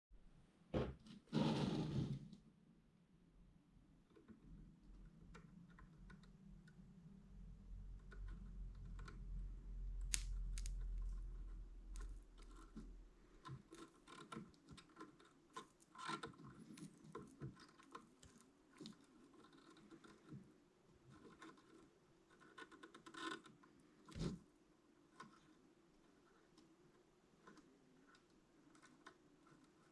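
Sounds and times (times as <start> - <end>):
small hard objects clicking: 10.0 - 11.3.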